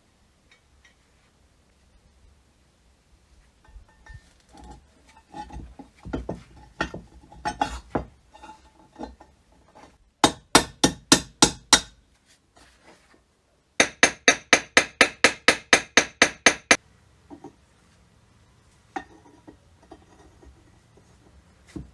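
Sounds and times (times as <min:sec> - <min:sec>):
hammer striking metal: 0:13.8 - 0:16.8.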